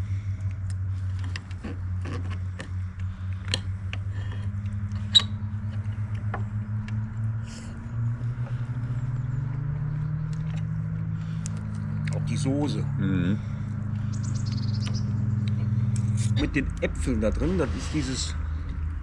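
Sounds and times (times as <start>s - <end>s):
low engine drone: 0.0s - 19.0s.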